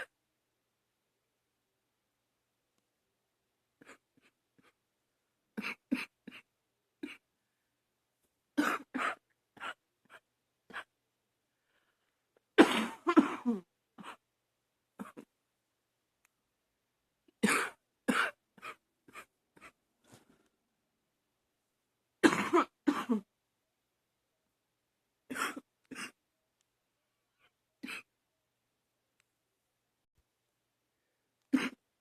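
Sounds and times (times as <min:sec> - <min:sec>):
woman coughing: 0:05.6 - 0:07.2, 0:08.6 - 0:10.9, 0:12.6 - 0:14.2, 0:15.0 - 0:15.3, 0:17.4 - 0:19.8, 0:22.2 - 0:23.3, 0:25.3 - 0:26.2, 0:31.6 - 0:31.8.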